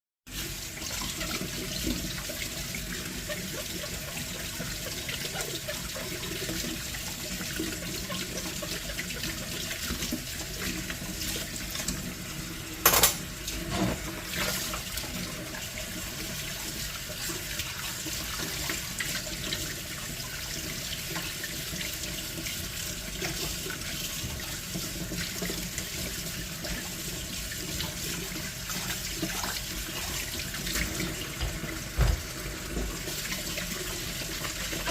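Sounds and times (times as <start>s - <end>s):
tap water running into sink: 0.3s - 34.9s.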